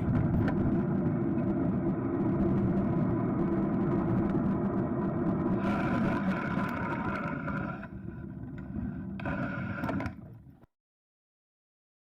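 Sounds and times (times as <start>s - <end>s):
wind on microphone: 0.0s - 9.0s
electric scooter ride rumble: 0.0s - 10.7s
faint steady whine: 0.0s - 10.7s.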